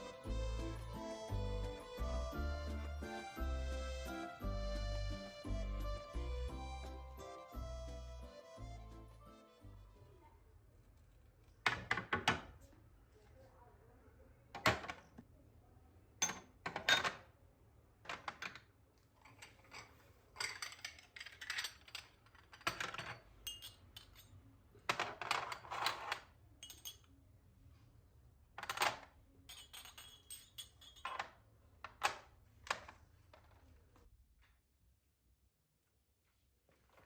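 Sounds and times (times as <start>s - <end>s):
dishes and cutlery clinking: 19.2s - 27.1s, 28.7s - 31.4s.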